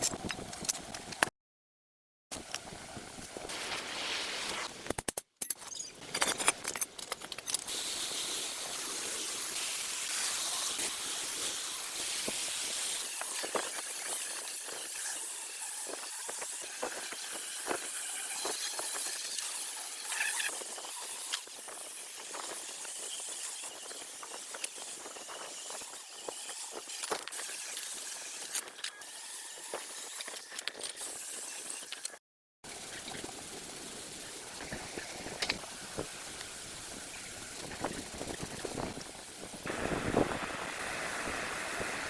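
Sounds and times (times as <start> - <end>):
high-pitched spraying hiss: 39.4 - 42.0.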